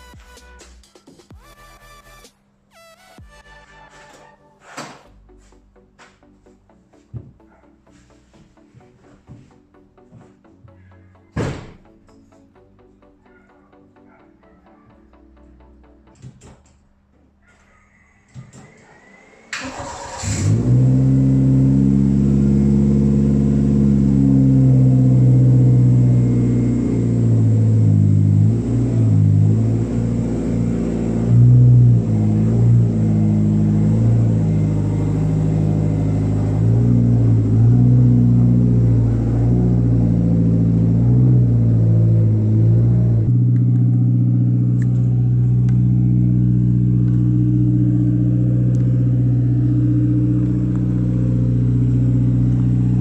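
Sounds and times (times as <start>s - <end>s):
car engine idling: 19.6s - 53.0s.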